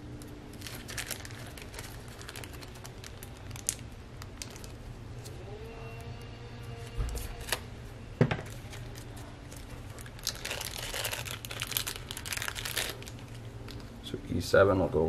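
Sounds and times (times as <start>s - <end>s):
steady low hum: 0.0s - 15.0s
crinkling and rustling: 0.2s - 5.4s, 8.3s - 14.0s.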